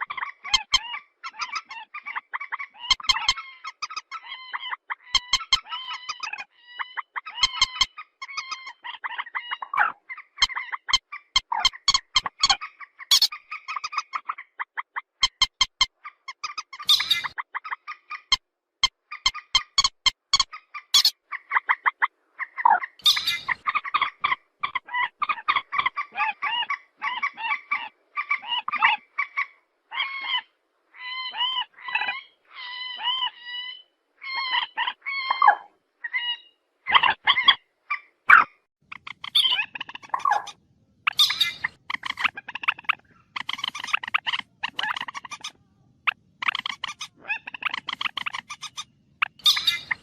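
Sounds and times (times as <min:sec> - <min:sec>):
rail bird calling harsh notes: 0:39.0 - 0:50.0.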